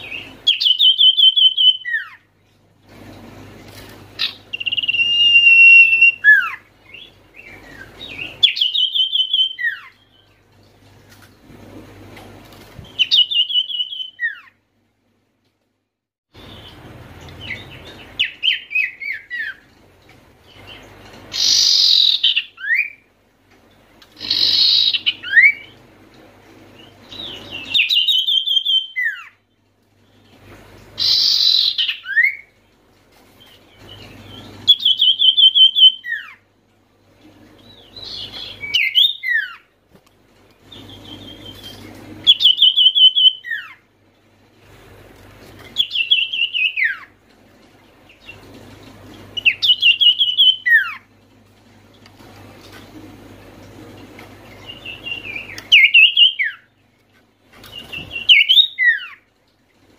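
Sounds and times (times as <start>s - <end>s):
bird singing: 0.0s - 2.3s, 4.2s - 10.4s, 12.9s - 14.6s, 16.4s - 19.7s, 20.5s - 23.1s, 24.2s - 25.8s, 26.8s - 29.4s, 31.0s - 32.6s, 33.4s - 36.4s, 37.6s - 39.7s, 40.7s - 43.8s, 45.8s - 47.1s, 49.4s - 51.1s, 54.5s - 56.8s, 57.7s - 59.3s
down-slurred bird whistles: 4.2s - 6.6s
harsh rasping bird calls: 20.6s - 23.0s, 24.2s - 25.8s, 31.0s - 32.5s.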